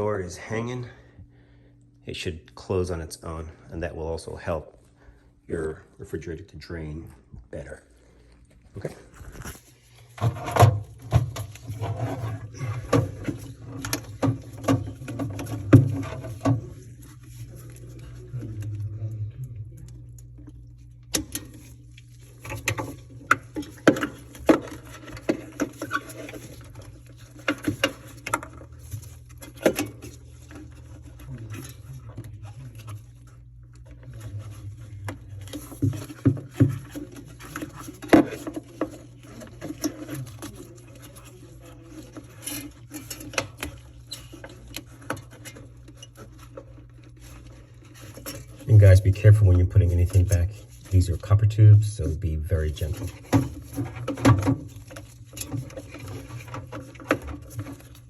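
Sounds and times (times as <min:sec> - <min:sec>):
refrigerator parts clicking and knocking: 0:10.2 - 0:18.3, 0:21.0 - 0:49.4, 0:52.7 - 0:58.0.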